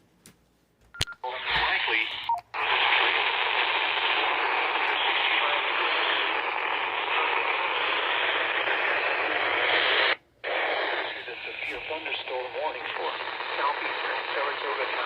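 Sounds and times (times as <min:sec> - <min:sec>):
radio static hiss: 0:01.2 - 0:15.0.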